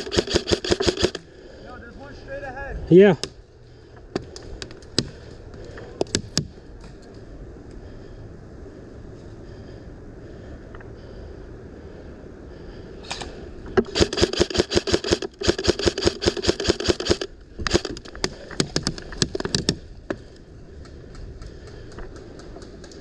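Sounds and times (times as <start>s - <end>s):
airsoft gun firing bursts: 0.0s - 1.2s, 13.8s - 18.0s
faint scattered shots: 0.0s - 1.2s.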